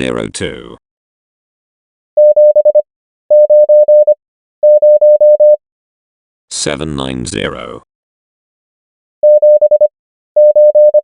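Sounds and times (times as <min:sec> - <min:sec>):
morse code beeps: 0:02.2 - 0:05.6, 0:09.2 - 0:11.0.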